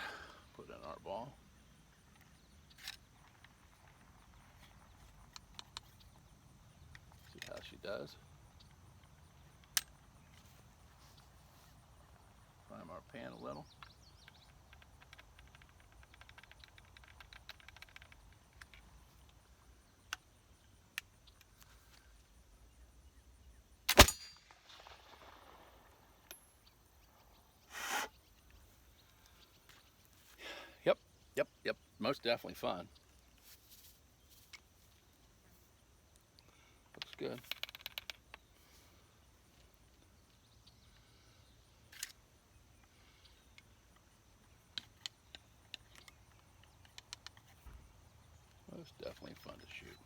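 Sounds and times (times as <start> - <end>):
faint outdoor background noise: 0.0 - 50.0
flintlock pistol firing: 23.9 - 26.4
brief rustle: 33.3 - 35.6.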